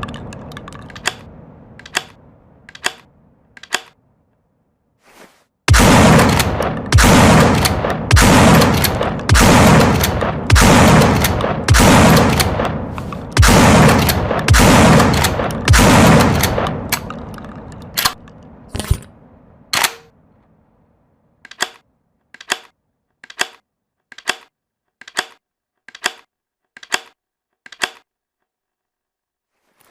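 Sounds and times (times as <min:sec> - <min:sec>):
shotgun shots with echo: 0:05.7 - 0:12.8, 0:13.4 - 0:16.9.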